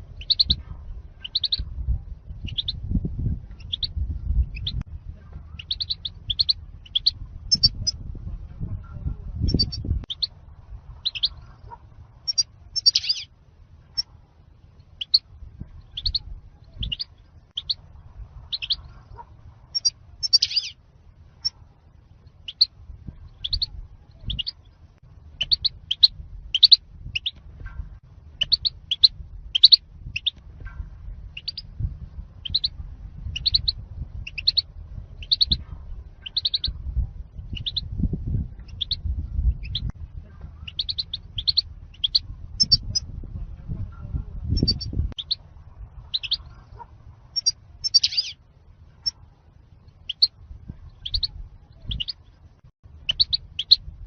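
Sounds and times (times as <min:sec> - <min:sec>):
low background rumble: 0:00.0 - 0:54.0
goldfinch chirping: 0:00.2 - 0:00.6, 0:01.2 - 0:01.6, 0:03.6 - 0:03.9, 0:05.6 - 0:08.0, 0:11.0 - 0:11.4, 0:12.3 - 0:13.3, 0:15.9 - 0:16.2, 0:18.5 - 0:18.9, 0:19.8 - 0:20.8, 0:22.4 - 0:22.7, 0:23.3 - 0:24.8, 0:25.4 - 0:27.4, 0:28.4 - 0:30.4, 0:31.4 - 0:31.7, 0:32.4 - 0:32.7, 0:33.3 - 0:35.6, 0:36.2 - 0:36.8, 0:37.6 - 0:37.8, 0:38.7 - 0:39.9, 0:40.6 - 0:43.0, 0:44.6 - 0:45.4, 0:46.1 - 0:46.6, 0:47.4 - 0:48.4, 0:50.0 - 0:50.3, 0:50.9 - 0:52.2, 0:53.0 - 0:53.8.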